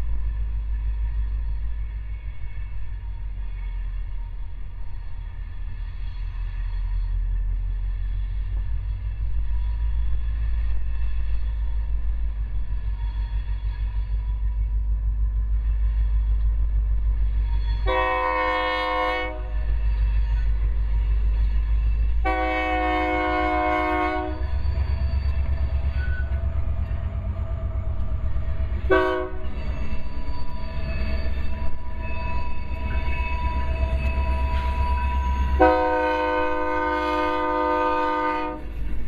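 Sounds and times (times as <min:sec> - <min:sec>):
train rumbling: 0:00.0 - 0:39.0
locomotive air horn blasts: 0:17.8 - 0:19.6, 0:22.2 - 0:24.6, 0:28.8 - 0:29.5, 0:35.5 - 0:38.7.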